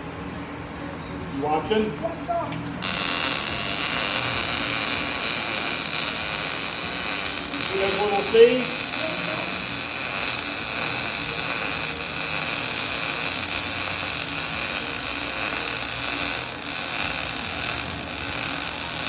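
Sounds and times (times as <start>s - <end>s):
welder arc running: 2.5s - 19.0s.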